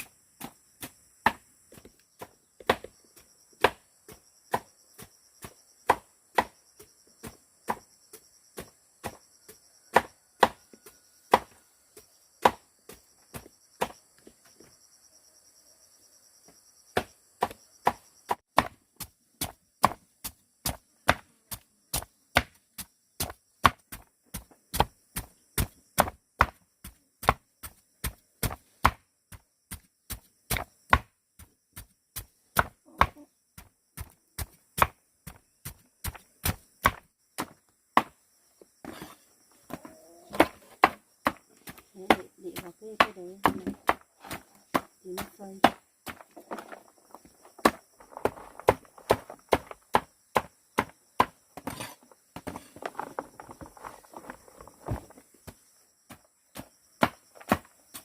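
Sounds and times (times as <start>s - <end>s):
insects buzzing: 0.0s - 58.0s
knife chopping on a board: 11.3s - 11.6s.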